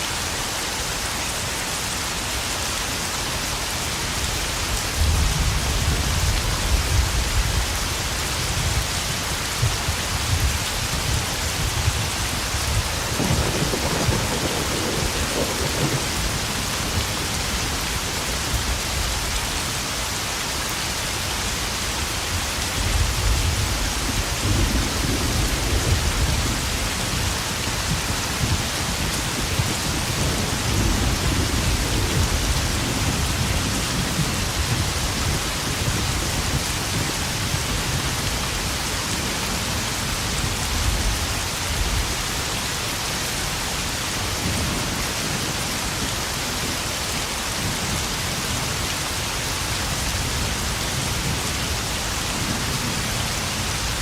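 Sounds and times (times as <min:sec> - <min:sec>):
rain pattering on puddles: 0:00.1 - 0:54.0
low rolls of thunder: 0:09.6 - 0:18.7, 0:22.8 - 0:38.0.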